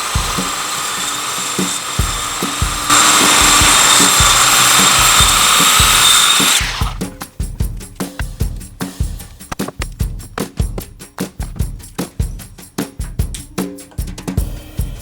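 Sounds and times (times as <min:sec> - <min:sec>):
power tool cutting wood: 0:00.0 - 0:07.0
background music with drum beat: 0:00.0 - 0:15.0.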